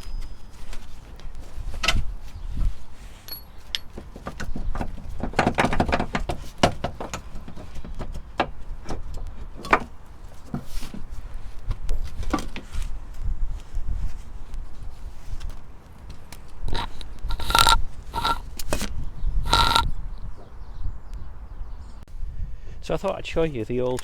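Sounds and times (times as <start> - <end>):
metal tools clicking and clunking: 3.2 - 10.0.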